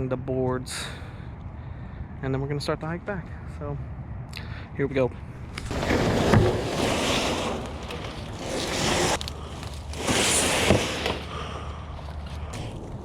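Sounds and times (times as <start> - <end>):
rustling in dead leaves: 5.6 - 13.0.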